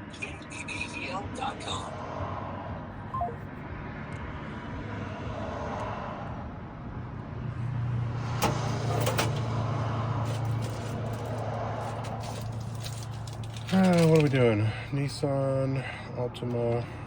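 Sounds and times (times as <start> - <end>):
car engine droning: 6.5 - 16.8.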